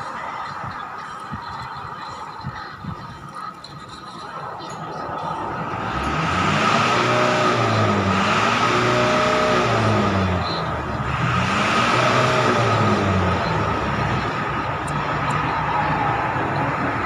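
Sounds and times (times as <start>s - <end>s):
motor engine revving: 5.4s - 17.0s.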